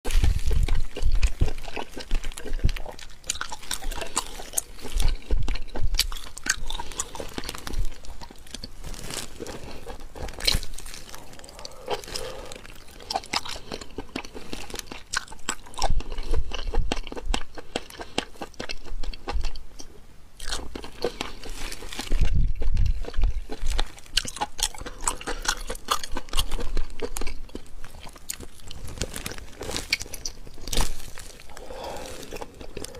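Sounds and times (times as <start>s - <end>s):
person chewing crunchy food: 0.1s - 32.9s.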